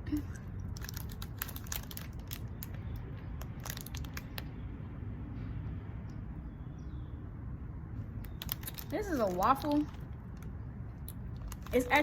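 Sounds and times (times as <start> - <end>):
snack wrapper crackling: 0.6 - 4.5, 8.3 - 12.0.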